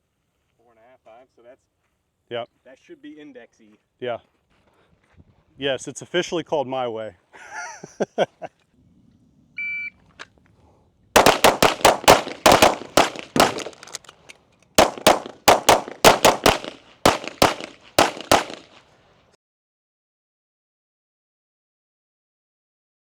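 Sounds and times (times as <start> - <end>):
rapid pistol shots: 11.2 - 14.0, 14.8 - 18.9.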